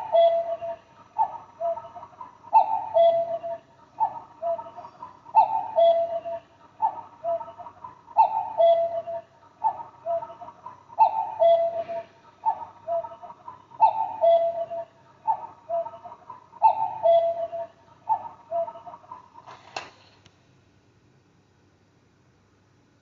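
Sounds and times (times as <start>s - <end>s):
cuckoo clock calling: 0.0s - 19.5s
sharp click: 19.5s - 20.4s.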